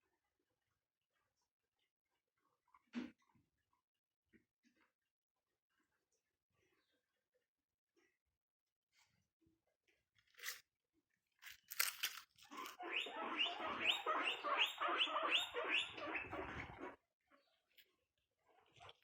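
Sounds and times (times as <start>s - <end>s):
guinea pigs crunching food: 11.4s - 14.9s.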